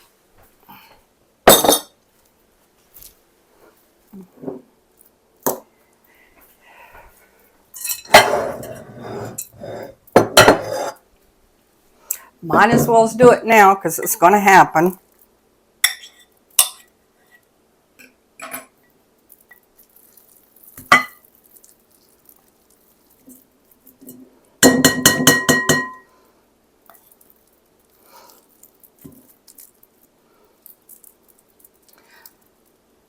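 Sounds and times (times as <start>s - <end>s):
food being scraped: 8.1s - 10.0s, 10.6s - 11.0s
utensil clinking on bowl: 20.2s - 21.3s, 24.0s - 26.1s.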